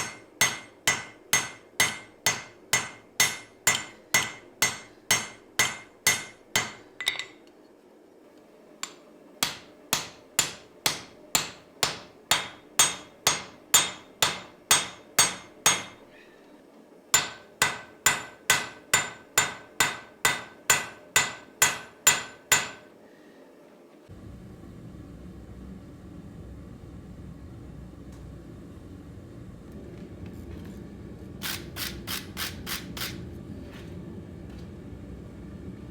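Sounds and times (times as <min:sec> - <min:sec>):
hammer ringing on anvil: 0:00.0 - 0:07.4, 0:08.8 - 0:16.0, 0:17.2 - 0:22.9.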